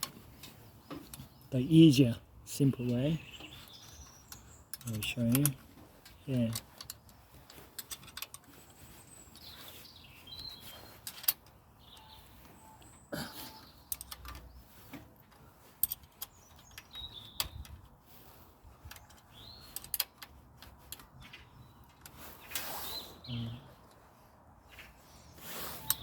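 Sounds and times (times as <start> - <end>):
faint birds chirping: 0.0 - 26.0
hand tools clicking on metal: 2.7 - 22.7, 25.5 - 26.0.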